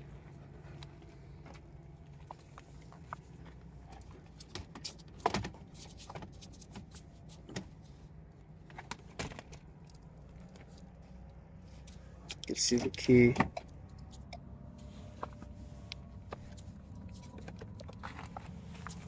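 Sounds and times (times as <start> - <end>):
low steady hum: 0.0 - 19.0.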